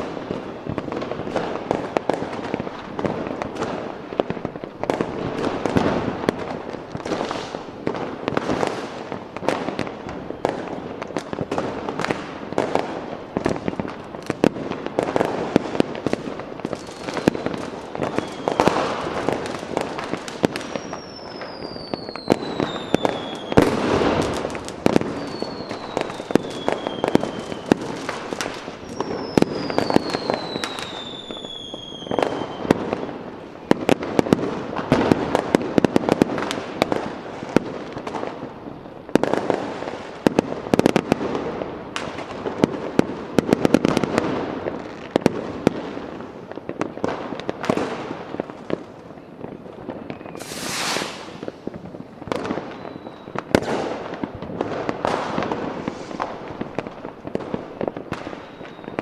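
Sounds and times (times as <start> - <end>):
fireworks bangs and crackles: 0.0 - 59.0
whistling rockets: 4.8 - 12.8, 15.0 - 33.1, 49.9 - 56.4, 58.1 - 59.0
short high hiss: 50.4 - 51.4.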